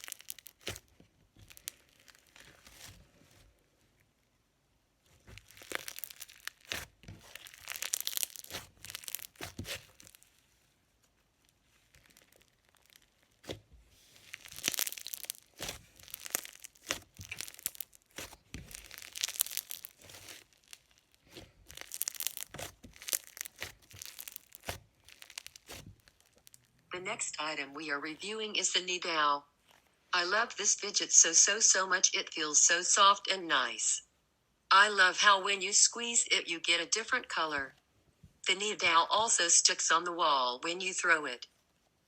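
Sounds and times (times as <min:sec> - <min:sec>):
slime squished by hand: 0:00.0 - 0:03.0, 0:05.1 - 0:26.8.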